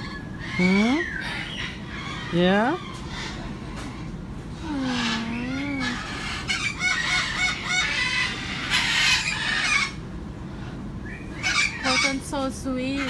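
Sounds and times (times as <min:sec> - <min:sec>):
cockatoo calling: 0:00.0 - 0:10.1, 0:10.7 - 0:13.0
cockatoo warbling calls: 0:00.0 - 0:10.1, 0:11.1 - 0:13.0
cockatoo squawk: 0:04.8 - 0:10.0, 0:11.4 - 0:12.2.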